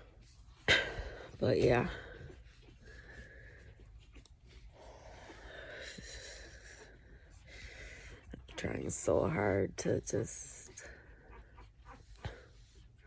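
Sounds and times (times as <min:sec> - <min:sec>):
woman breathing heavily and wheezing: 0:00.6 - 0:08.6.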